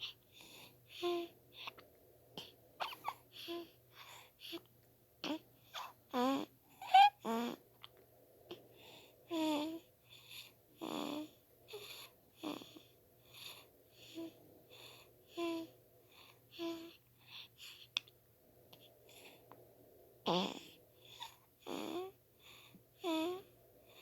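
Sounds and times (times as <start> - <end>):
baby snoring: 0.0 - 1.8, 2.4 - 3.8, 5.2 - 7.6, 8.9 - 17.0, 20.2 - 24.0.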